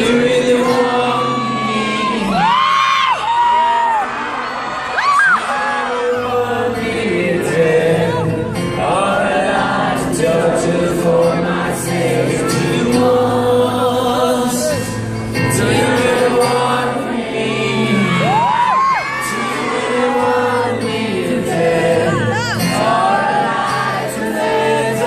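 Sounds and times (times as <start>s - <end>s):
acoustic guitar: 0.0s - 25.0s
crowd singing along: 0.0s - 25.0s
audience whooping and whistling: 2.1s - 5.9s, 18.2s - 19.9s.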